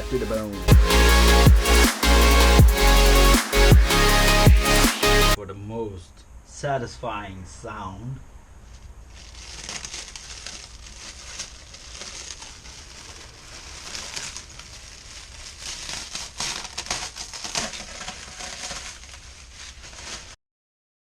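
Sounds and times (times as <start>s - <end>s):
plastic packaging crinkling and tearing: 8.7s - 20.4s.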